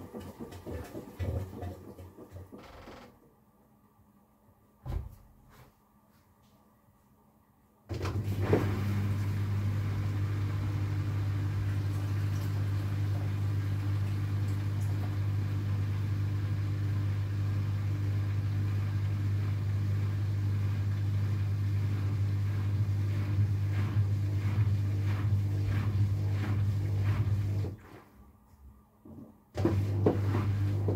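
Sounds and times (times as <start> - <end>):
washing machine drain pump humming: 0.0 - 3.1, 7.9 - 27.8, 29.6 - 30.9.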